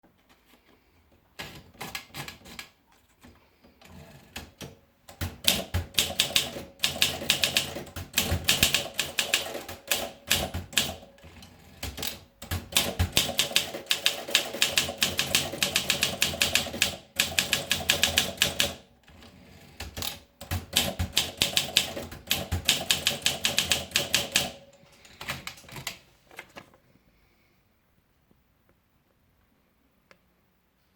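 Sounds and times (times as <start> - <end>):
typewriter keys striking: 4.4 - 11.1, 11.8 - 18.8, 19.8 - 26.0.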